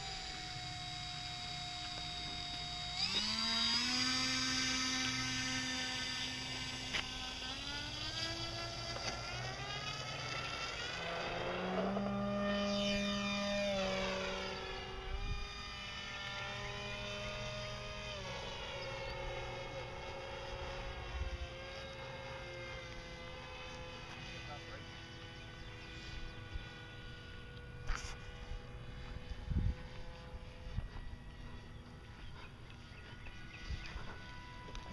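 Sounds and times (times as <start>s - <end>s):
model plane motor whining: 0.0s - 34.9s.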